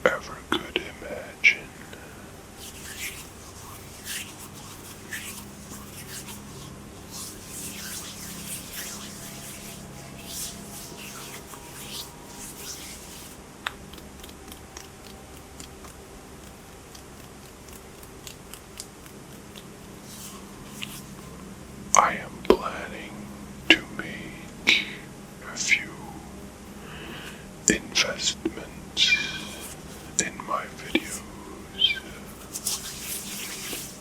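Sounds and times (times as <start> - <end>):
hands rubbing together: 2.4 - 14.4, 19.6 - 21.4, 29.0 - 34.0.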